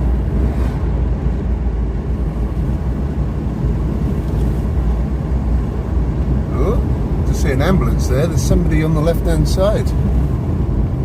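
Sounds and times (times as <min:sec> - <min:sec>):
car engine rumble inside: 0:00.0 - 0:11.0.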